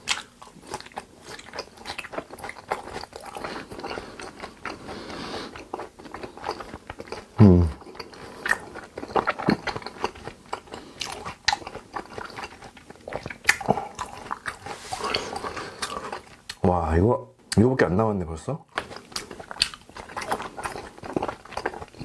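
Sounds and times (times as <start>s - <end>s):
person chewing wet clicks: 0.0s - 16.6s, 18.7s - 22.0s.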